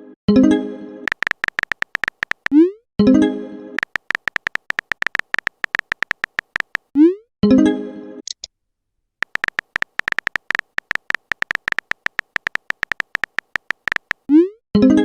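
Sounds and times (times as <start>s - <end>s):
short electronic beeps: 1.1s - 2.7s, 3.8s - 6.9s, 9.2s - 14.3s.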